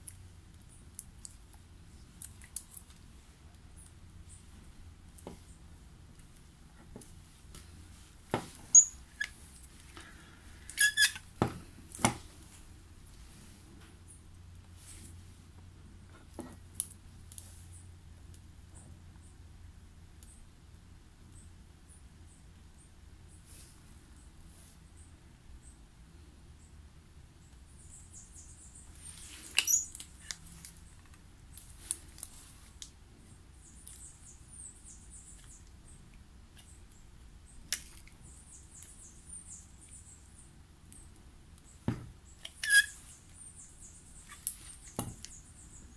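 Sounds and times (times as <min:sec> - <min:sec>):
brief squeak: 0:08.7 - 0:09.3, 0:10.8 - 0:11.2, 0:42.6 - 0:43.0
faint high squeaks of wax: 0:10.6 - 0:11.2, 0:42.4 - 0:43.4.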